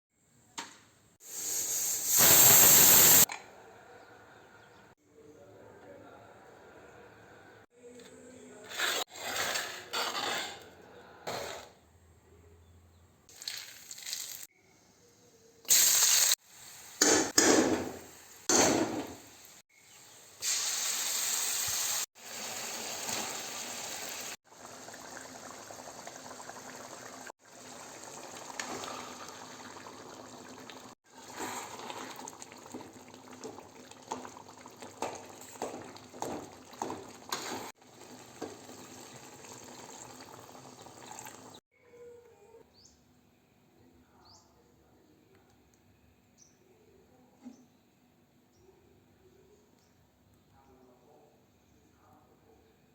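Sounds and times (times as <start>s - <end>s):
frying sizzle: 1.2s - 3.3s, 13.3s - 14.5s, 15.7s - 19.6s, 20.3s - 41.6s
utensils clattering against pots: 31.3s - 39.0s.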